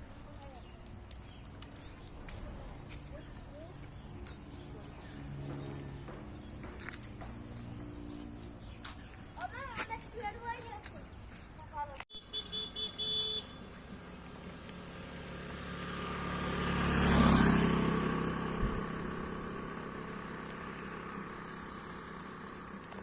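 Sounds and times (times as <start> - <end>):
motor vehicle driving past: 1.3 - 9.2, 13.7 - 23.0.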